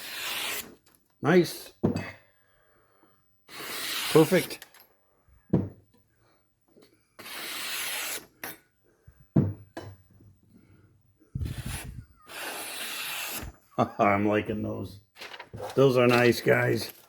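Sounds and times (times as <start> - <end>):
knife rubbing stroke: 7.2 - 8.3.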